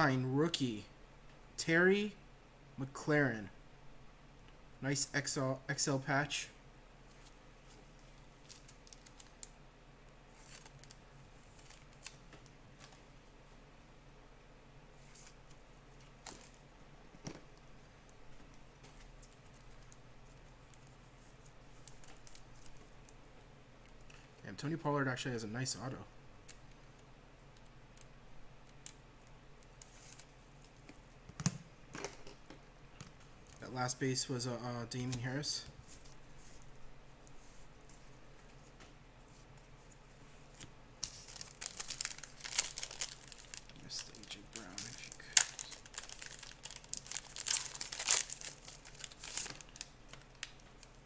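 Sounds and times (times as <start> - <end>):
trading cards clicking and rustling: 40.5 - 50.9.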